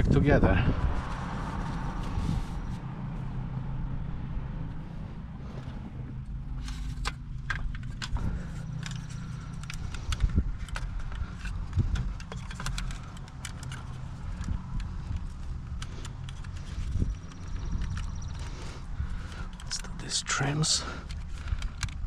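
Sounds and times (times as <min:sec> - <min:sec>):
steady low rumble: 0:00.0 - 0:22.0
parts and tools clicking: 0:06.3 - 0:22.0.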